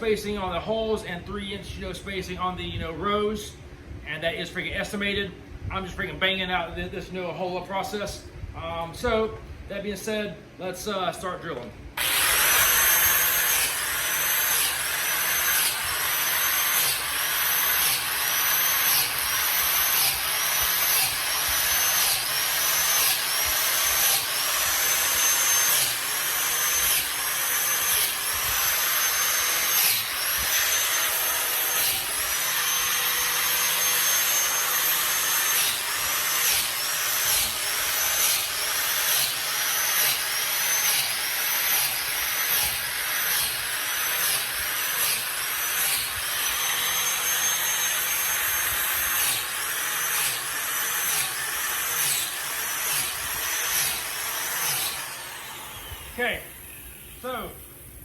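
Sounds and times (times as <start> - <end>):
drill whining boring into log: 12.0 - 57.6.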